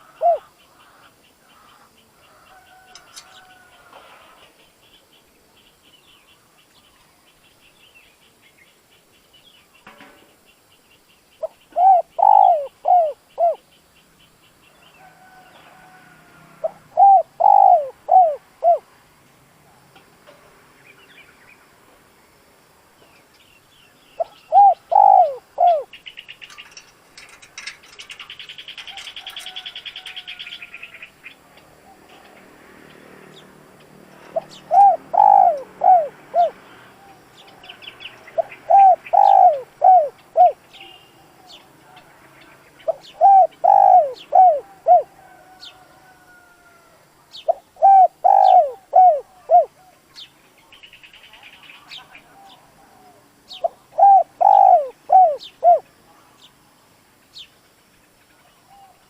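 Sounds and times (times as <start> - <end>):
dove cooing: 0.0 - 1.9, 11.4 - 13.6, 15.0 - 18.9, 24.2 - 26.8, 34.2 - 41.7, 42.8 - 46.6, 47.4 - 50.0, 52.2 - 55.9
small birds chirping: 0.0 - 15.7, 22.9 - 45.8, 47.2 - 59.0.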